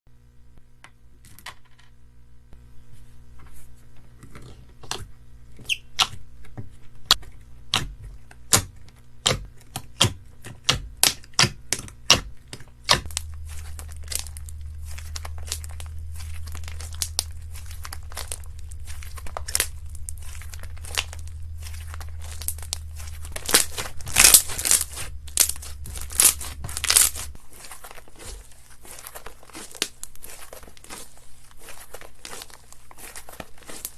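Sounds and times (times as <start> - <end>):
steady low hum: 0.1 - 33.9
slime crackling: 7.7 - 33.9.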